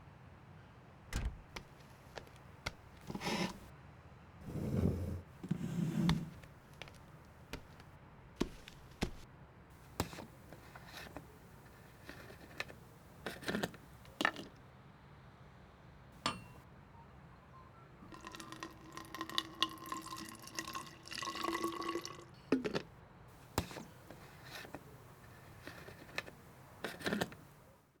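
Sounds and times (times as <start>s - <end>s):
sharp clicks and knocks: 1.2s - 3.6s
water pouring: 18.1s - 22.8s.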